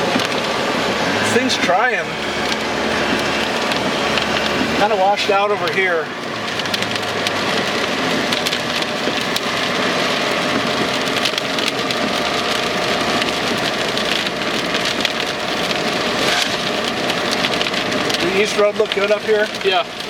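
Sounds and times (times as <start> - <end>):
rain on car roof: 0.0 - 20.0
road and engine noise: 0.0 - 20.0.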